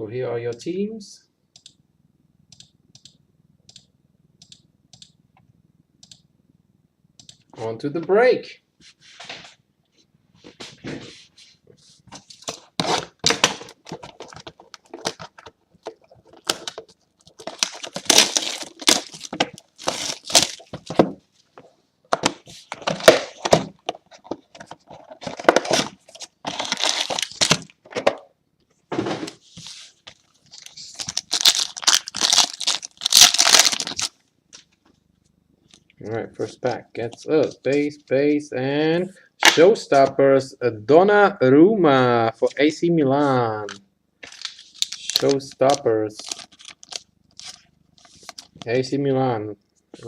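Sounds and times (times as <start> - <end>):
wrappers tearing and crinkling: 16.2 - 20.8, 25.2 - 27.7, 30.1 - 34.2, 44.2 - 48.6.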